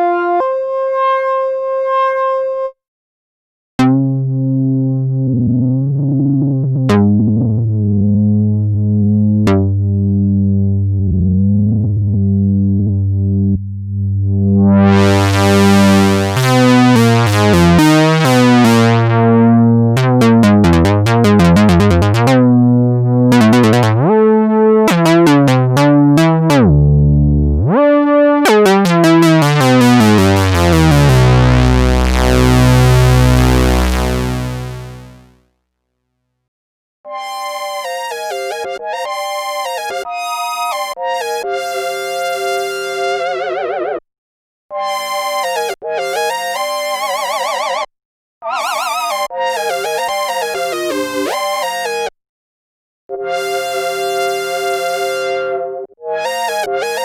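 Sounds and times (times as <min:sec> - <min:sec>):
analog synthesizer playing: 0:14.8 - 0:35.4.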